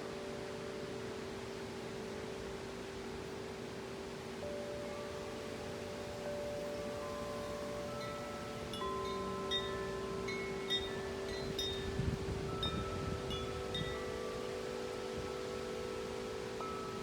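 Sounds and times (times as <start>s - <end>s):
wind chimes ringing: 4.4s - 17.0s
wind gust on microphone: 11.4s - 14.1s.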